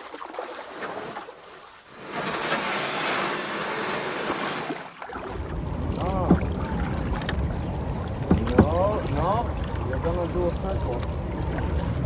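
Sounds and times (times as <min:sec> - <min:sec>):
water splashing around kayak: 0:00.0 - 0:12.0.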